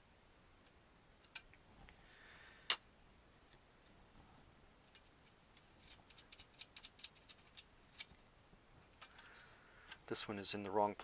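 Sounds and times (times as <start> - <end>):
small screw and parts clicking: 4.8 - 8.1.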